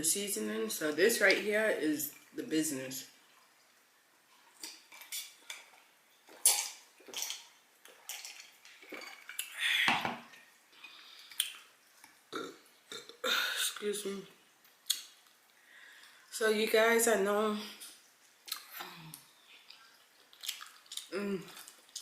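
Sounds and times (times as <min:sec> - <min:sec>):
chewing and lip-smacking: 0:11.0 - 0:12.4, 0:17.8 - 0:22.0.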